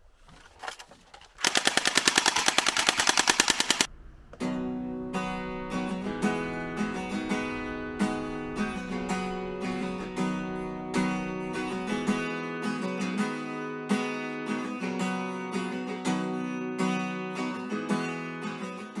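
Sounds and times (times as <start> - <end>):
acoustic guitar strumming: 3.9 - 19.0.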